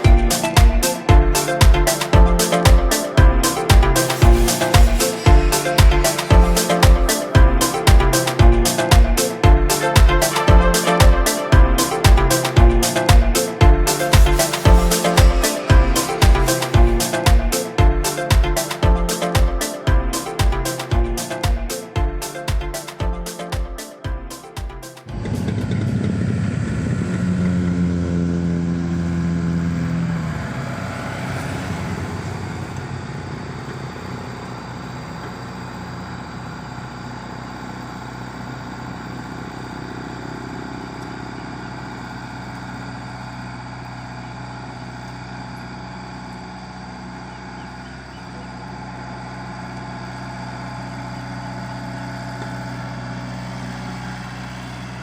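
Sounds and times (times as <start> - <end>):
excavator diesel engine running: 24.2 - 55.0.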